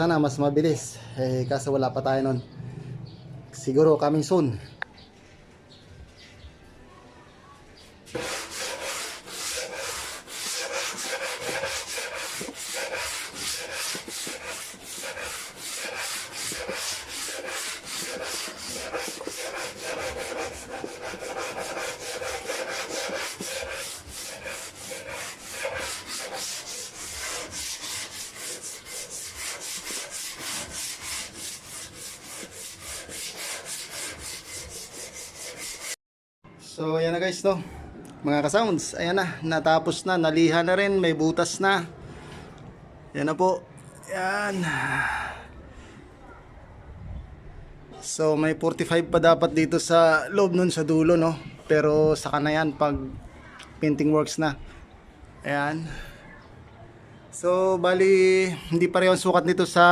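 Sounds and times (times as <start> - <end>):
sandpaper scraping wood: 8.1 - 36.0.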